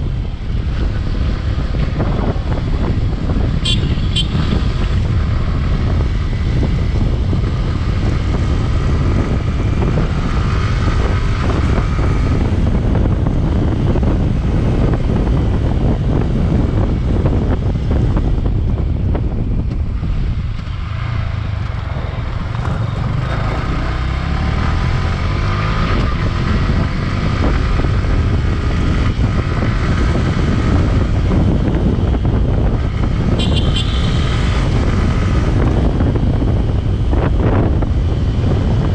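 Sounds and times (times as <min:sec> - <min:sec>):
wind buffeting microphone: 0:00.0 - 0:38.9
motorcycle engine revving: 0:19.7 - 0:38.9.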